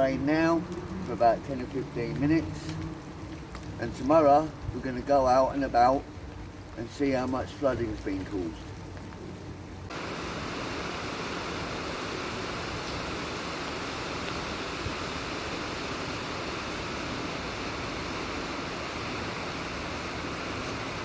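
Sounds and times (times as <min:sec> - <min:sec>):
heavy rain hissing: 0:00.0 - 0:21.0.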